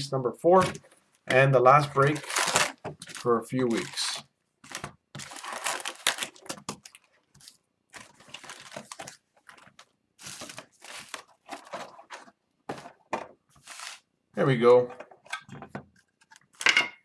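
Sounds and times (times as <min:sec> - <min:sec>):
plastic wrapping crinkling and tearing: 0:00.6 - 0:12.3.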